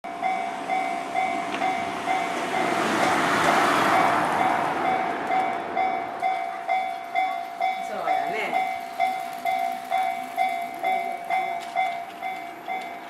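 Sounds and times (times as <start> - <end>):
level crossing warning bell: 0.0 - 13.0
electric train passing: 0.1 - 13.0.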